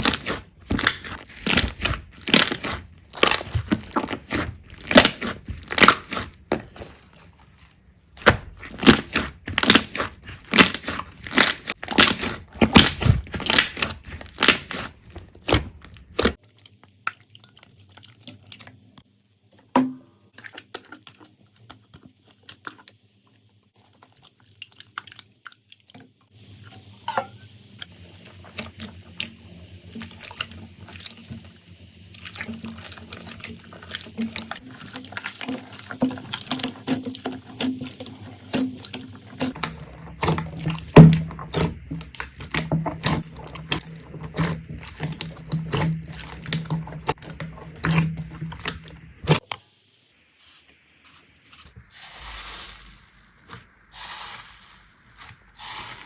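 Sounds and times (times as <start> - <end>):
slime squelching: 0.0 - 18.8, 27.8 - 49.4.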